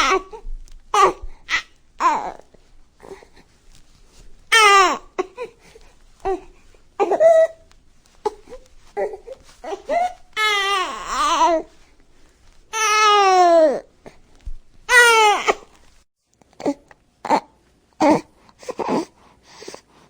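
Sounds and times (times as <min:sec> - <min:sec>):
baby crying: 0:00.0 - 0:02.4, 0:04.5 - 0:11.8, 0:12.7 - 0:13.9, 0:14.9 - 0:15.7
baby babbling and fussing: 0:00.0 - 0:03.6, 0:04.2 - 0:11.8, 0:12.7 - 0:14.3, 0:14.9 - 0:15.8, 0:16.6 - 0:19.8.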